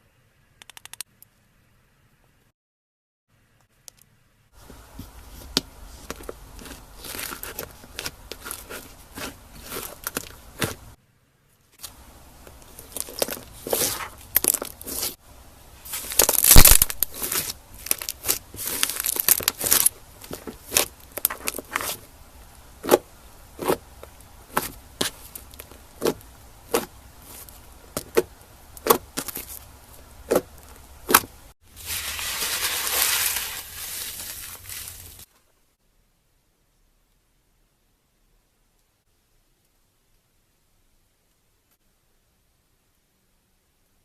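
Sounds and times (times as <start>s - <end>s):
slime crackling and popping: 12.5s - 15.2s, 15.9s - 22.0s, 22.7s - 29.6s.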